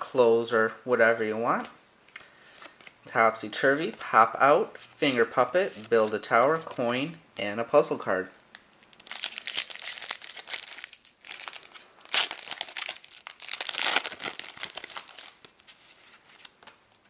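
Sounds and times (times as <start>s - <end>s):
wrapper crinkling and tearing: 8.4s - 16.5s.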